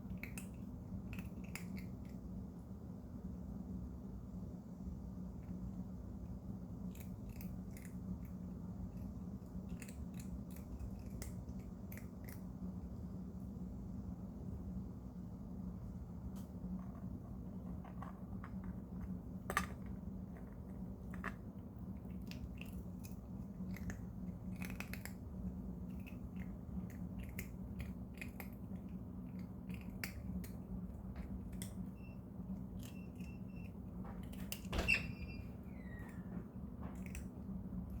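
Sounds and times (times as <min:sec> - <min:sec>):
cat crunching hard treats: 0:00.0 - 0:02.3, 0:06.8 - 0:12.8, 0:16.6 - 0:34.7
steady low hum: 0:00.0 - 0:38.0.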